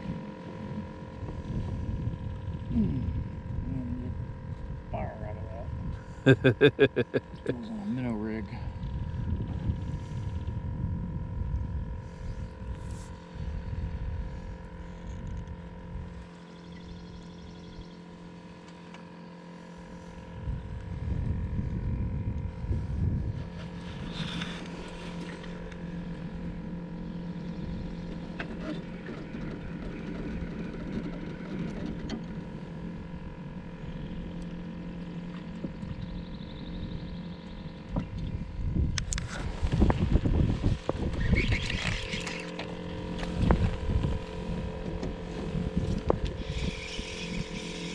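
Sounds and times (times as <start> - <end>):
low rumbling noise: 0.0 - 18.2, 19.6 - 47.6
boat motor humming: 0.0 - 47.9.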